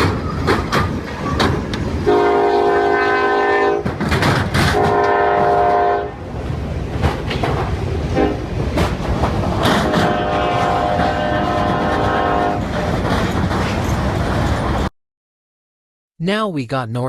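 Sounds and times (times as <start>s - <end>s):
train wheel clatter: 0.0s - 2.5s, 3.7s - 14.9s
train low rumble: 0.0s - 14.9s
locomotive air horn: 2.0s - 3.9s, 4.7s - 6.2s, 8.2s - 8.4s, 9.8s - 12.7s.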